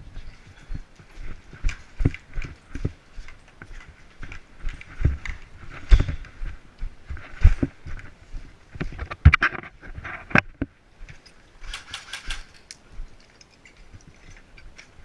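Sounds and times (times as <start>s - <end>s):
heavy footsteps on ground: 0.0s - 11.2s
clothing and gear rustling: 0.0s - 15.0s.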